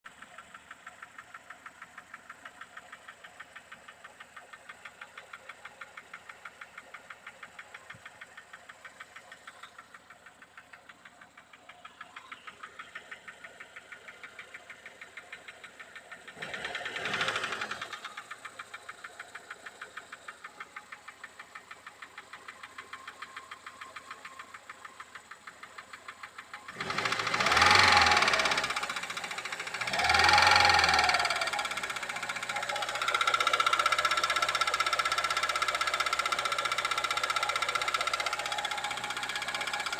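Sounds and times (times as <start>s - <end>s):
car engine running: 0.1s - 39.9s
rapid engine knock: 0.1s - 39.9s.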